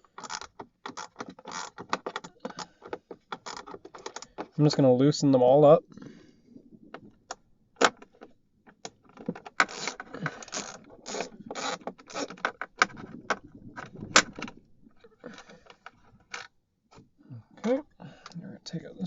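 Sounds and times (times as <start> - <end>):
screwdriver clicks and scrapes: 8.8 - 12.9.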